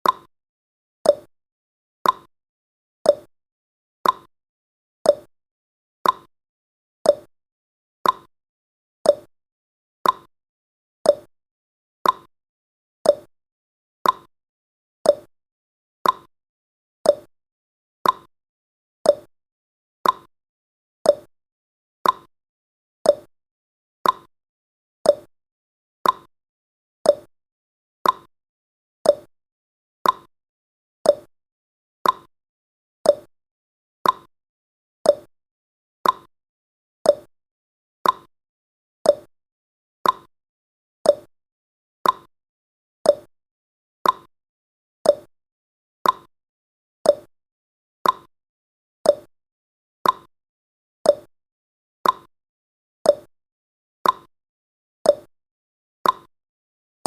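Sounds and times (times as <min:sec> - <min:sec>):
timer ticking: 0:00.0 - 0:00.3, 0:01.1 - 0:01.3, 0:02.0 - 0:02.3, 0:03.1 - 0:03.3, 0:04.0 - 0:04.3, 0:05.1 - 0:05.3, 0:06.0 - 0:06.3, 0:07.1 - 0:07.3, 0:08.0 - 0:08.3, 0:09.1 - 0:09.3, 0:10.0 - 0:10.3, 0:11.1 - 0:11.3, 0:12.0 - 0:12.3, 0:13.1 - 0:13.3, 0:14.0 - 0:14.3, 0:15.1 - 0:15.3, 0:16.0 - 0:16.3, 0:17.1 - 0:17.3, 0:18.0 - 0:18.3, 0:19.1 - 0:19.3, 0:20.0 - 0:20.3, 0:21.1 - 0:21.3, 0:22.0 - 0:22.3, 0:23.1 - 0:23.3, 0:24.0 - 0:24.3, 0:25.1 - 0:25.3, 0:26.0 - 0:26.3, 0:27.1 - 0:27.3, 0:28.0 - 0:28.3, 0:29.0 - 0:29.3, 0:30.0 - 0:30.3, 0:31.0 - 0:31.3, 0:32.0 - 0:32.3, 0:33.1 - 0:33.3, 0:34.0 - 0:34.3, 0:35.1 - 0:35.3, 0:36.0 - 0:36.3, 0:37.1 - 0:37.3, 0:38.0 - 0:38.3, 0:39.0 - 0:39.3, 0:40.0 - 0:40.3, 0:41.1 - 0:41.3, 0:42.0 - 0:42.3, 0:43.1 - 0:43.3, 0:44.0 - 0:44.3, 0:45.0 - 0:45.3, 0:46.0 - 0:46.3, 0:47.1 - 0:47.3, 0:48.0 - 0:48.3, 0:49.1 - 0:49.3, 0:50.0 - 0:50.3, 0:51.1 - 0:51.3, 0:52.0 - 0:52.3, 0:53.1 - 0:53.3, 0:54.0 - 0:54.3, 0:55.1 - 0:55.3, 0:56.0 - 0:56.3.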